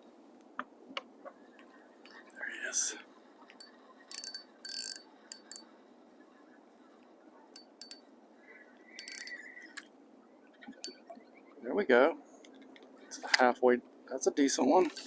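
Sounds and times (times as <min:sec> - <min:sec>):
faint steady hiss: 0:00.0 - 0:15.0
fishing reel clicks and ticks: 0:03.6 - 0:05.6, 0:07.6 - 0:08.0, 0:09.0 - 0:09.4.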